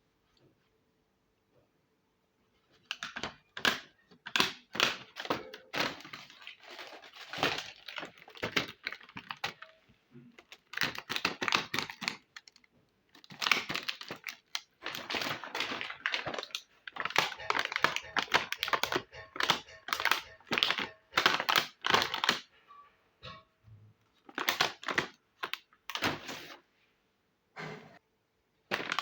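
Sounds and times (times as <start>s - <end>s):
plastic toy pieces clattering: 3.0s - 9.7s, 10.3s - 22.5s.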